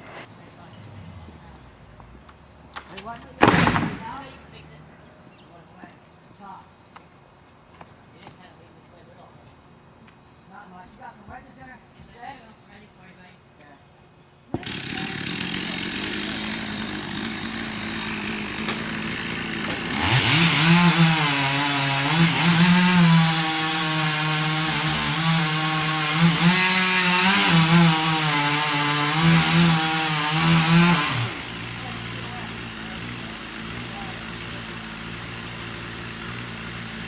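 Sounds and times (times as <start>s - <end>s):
chainsaw cutting wood: 2.8s - 4.3s, 14.5s - 37.0s.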